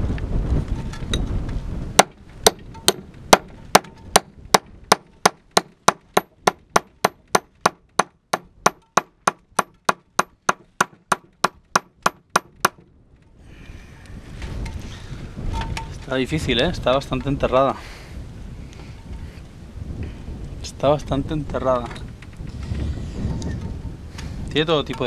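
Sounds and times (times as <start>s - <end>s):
hammer striking rock: 2.0s - 12.8s.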